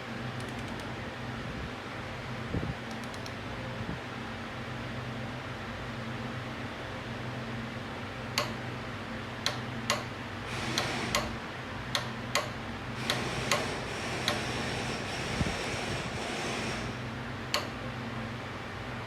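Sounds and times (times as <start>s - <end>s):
steady fan hum: 0.0s - 19.0s
hand tools clicking on metal: 10.7s - 11.3s, 11.9s - 14.5s.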